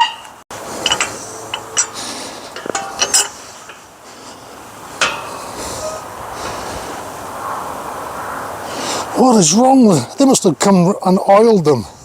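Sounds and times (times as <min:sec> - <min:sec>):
metal gate clanking: 0:00.0 - 0:04.0, 0:04.8 - 0:06.2.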